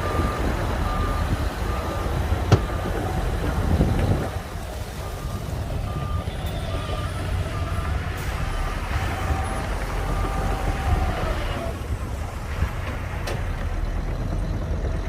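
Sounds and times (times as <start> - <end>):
reversing alarm beeps: 0.0 - 11.7
diesel engines rumbling: 0.0 - 15.0.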